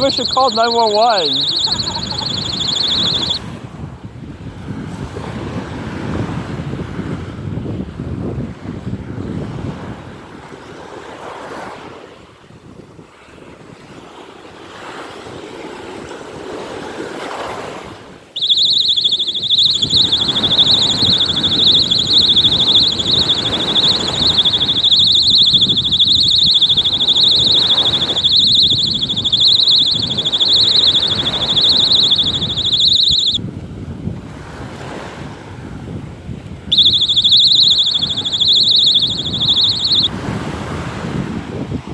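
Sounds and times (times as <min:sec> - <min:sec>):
fire alarm high tone: 0:00.0 - 0:03.4, 0:18.4 - 0:33.4, 0:36.7 - 0:40.2
wind: 0:00.0 - 0:41.9.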